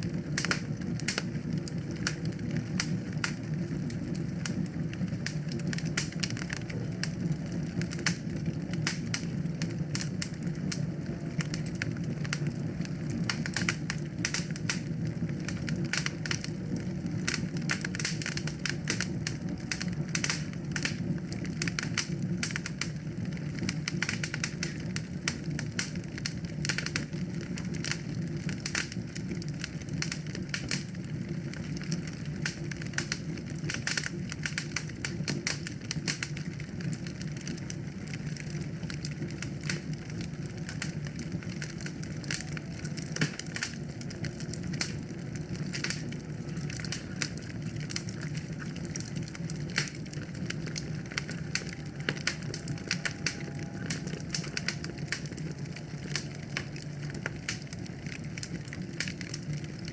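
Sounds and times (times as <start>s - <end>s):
wood fire crackling and popping: 0.0s - 59.9s.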